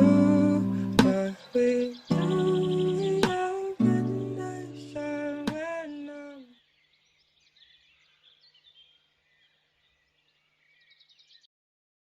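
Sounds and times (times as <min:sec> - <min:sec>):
plucked guitar notes: 0:00.0 - 0:01.3, 0:02.1 - 0:05.7
small birds chirping: 0:00.0 - 0:11.5.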